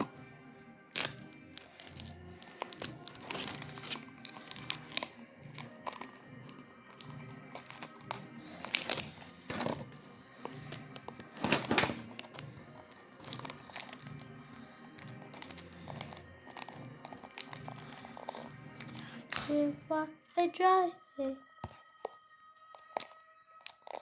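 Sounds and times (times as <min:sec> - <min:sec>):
quiet background music: 0:00.0 - 0:24.0
sticky tape ripping: 0:00.9 - 0:19.6
paper crinkling: 0:00.9 - 0:19.7, 0:21.6 - 0:24.0.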